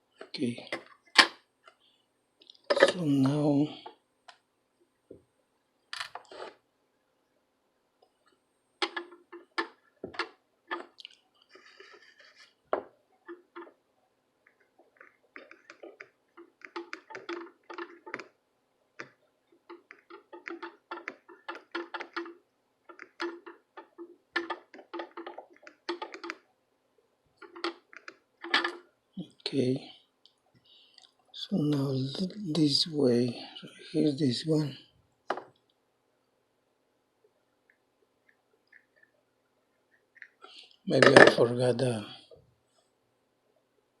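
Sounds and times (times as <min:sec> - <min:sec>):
hand tools tapping circuit board: 0:19.0 - 0:26.4.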